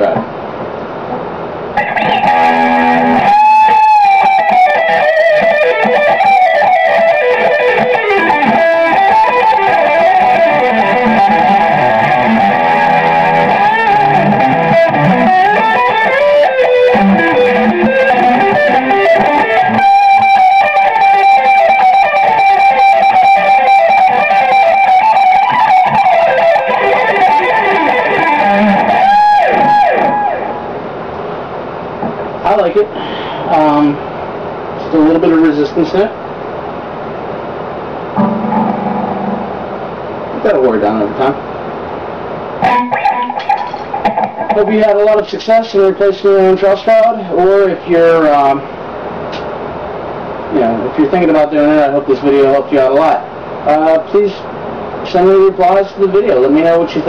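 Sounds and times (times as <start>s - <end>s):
electric guitar lead line: 1.1s - 30.7s, 38.1s - 40.6s, 42.5s - 45.1s.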